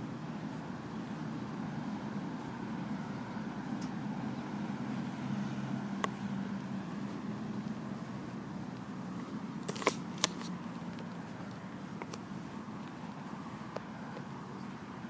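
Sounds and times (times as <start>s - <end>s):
steady low hum: 0.0s - 15.0s
sharp clicks: 9.6s - 12.3s.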